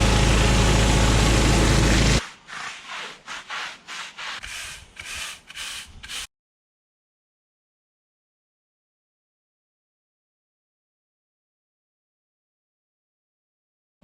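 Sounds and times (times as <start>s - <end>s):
pressure washer engine humming: 0.0s - 2.2s.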